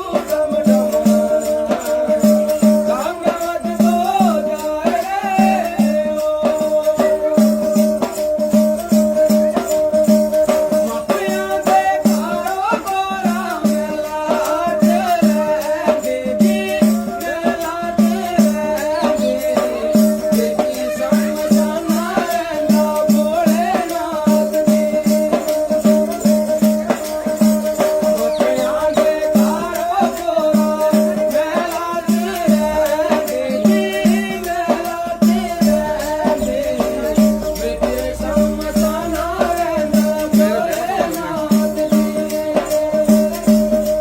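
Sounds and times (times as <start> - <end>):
shaker ticking: 0.0 - 44.0
wavering melody: 24.1 - 30.7.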